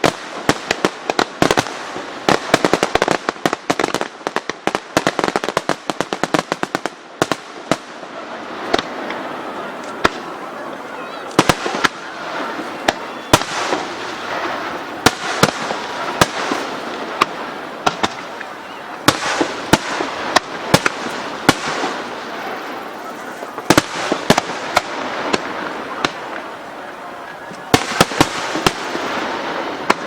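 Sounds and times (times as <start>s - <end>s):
fireworks bursting: 0.0s - 30.0s
continuous rushing haze: 7.8s - 30.0s.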